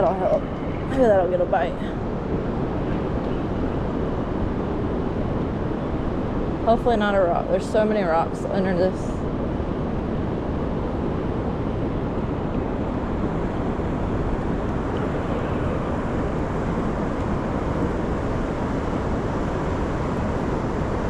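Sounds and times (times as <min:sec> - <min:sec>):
wind rumbling on microphone: 0:00.0 - 0:21.0.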